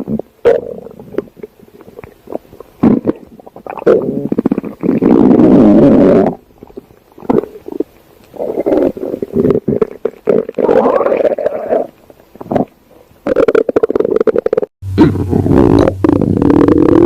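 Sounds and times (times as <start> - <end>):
stomach growling: 0.0 - 17.0.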